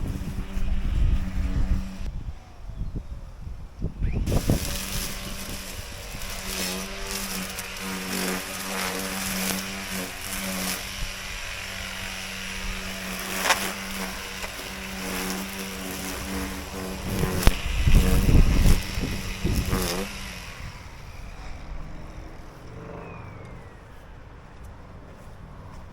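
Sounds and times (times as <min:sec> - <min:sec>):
lawn mower engine running: 0:00.0 - 0:02.1, 0:04.2 - 0:25.2.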